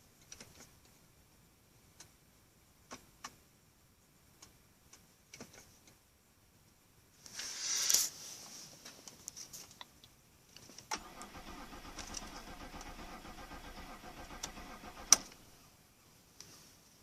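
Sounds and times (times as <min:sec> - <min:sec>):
car engine starting and running: 0:10.9 - 0:15.7.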